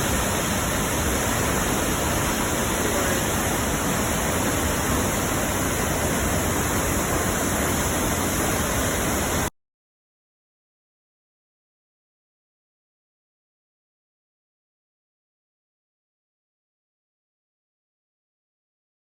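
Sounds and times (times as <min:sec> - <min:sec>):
waterfall rushing: 0:00.0 - 0:09.5.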